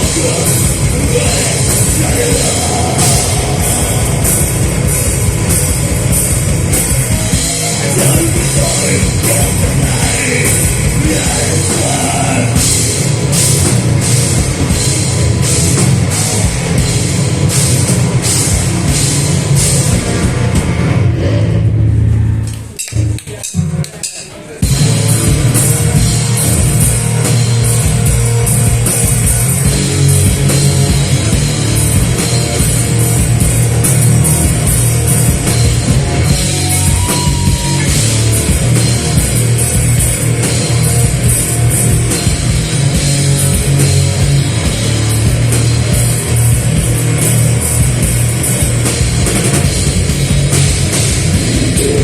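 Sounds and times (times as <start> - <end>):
heavy rock band playing: 0.0 - 52.0.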